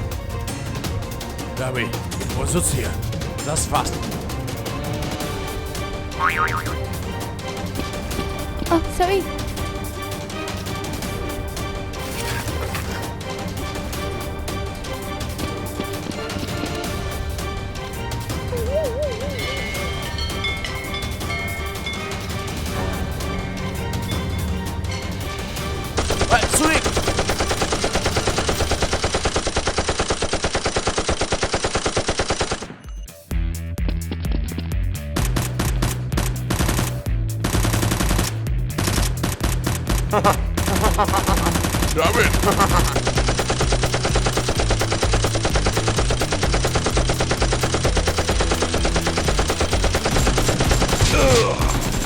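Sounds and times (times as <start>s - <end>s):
automatic gunfire: 26.0s - 32.8s, 42.4s - 51.4s.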